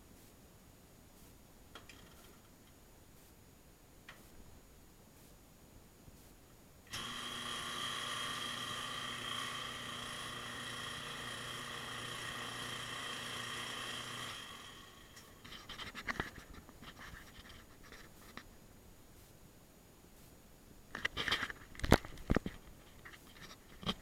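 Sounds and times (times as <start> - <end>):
clicks and crackles: 1.7 - 2.8, 15.2 - 18.5, 20.9 - 24.0
washing machine whining: 6.9 - 15.4.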